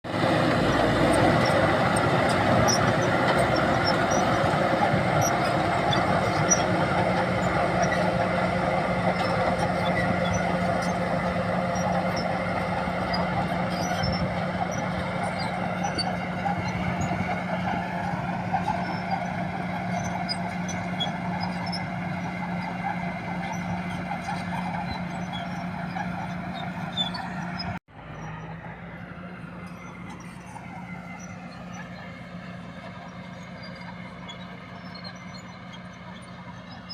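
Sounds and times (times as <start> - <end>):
bulldozer engine running: 0.0 - 36.9.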